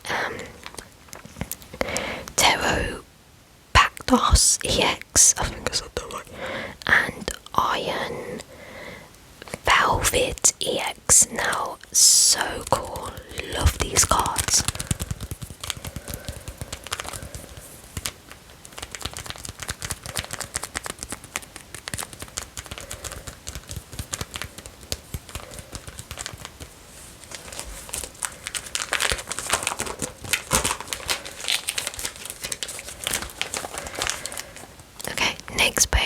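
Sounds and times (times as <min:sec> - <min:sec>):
plastic card sleeves crinkling: 0:11.4 - 0:35.2.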